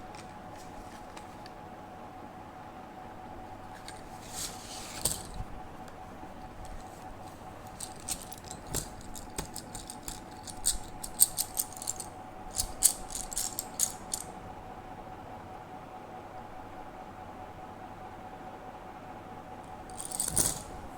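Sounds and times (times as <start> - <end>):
faint steady hum: 0.0 - 20.9
slate pencils clicking together: 7.8 - 14.3.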